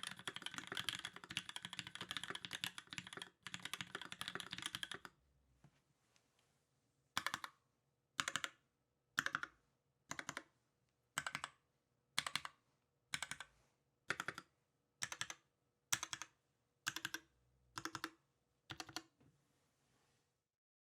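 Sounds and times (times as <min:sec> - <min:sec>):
mechanical keyboard typing: 0:00.0 - 0:05.1, 0:07.2 - 0:07.5, 0:08.2 - 0:08.5, 0:09.2 - 0:09.5, 0:10.1 - 0:10.5, 0:11.2 - 0:11.5, 0:12.2 - 0:12.5, 0:13.2 - 0:13.5, 0:14.1 - 0:14.4, 0:15.0 - 0:16.3, 0:16.9 - 0:17.2, 0:17.8 - 0:19.1.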